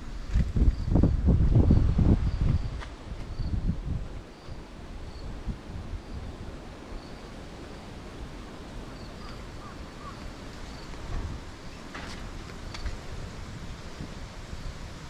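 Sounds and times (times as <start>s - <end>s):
wind buffeting microphone: 0.0s - 15.0s.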